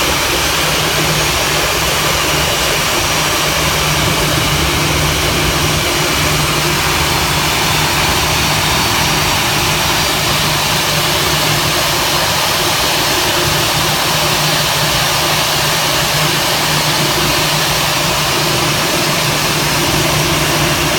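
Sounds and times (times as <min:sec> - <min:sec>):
jet engines running: 0:00.0 - 0:20.9.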